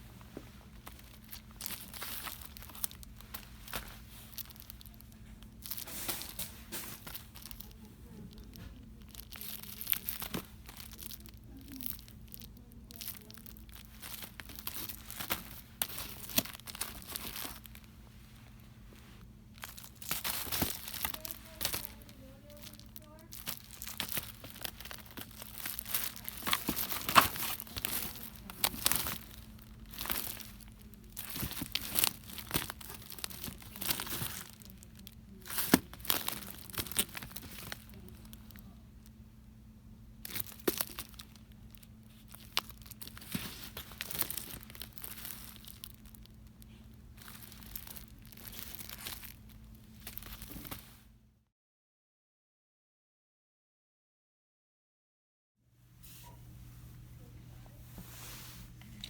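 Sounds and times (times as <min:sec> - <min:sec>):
packaging crinkling: 0:00.4 - 0:39.1, 0:40.2 - 0:51.0.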